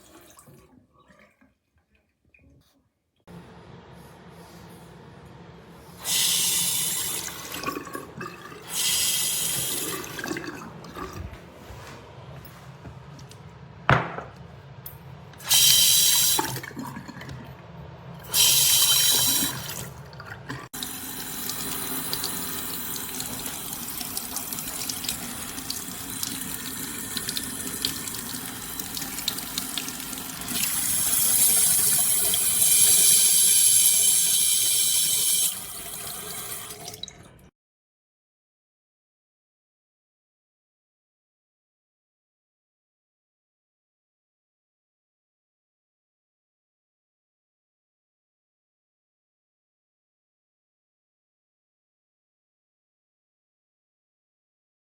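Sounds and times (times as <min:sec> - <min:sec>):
faucet water spurts: 0:06.0 - 0:11.4, 0:15.4 - 0:17.6, 0:18.2 - 0:37.4.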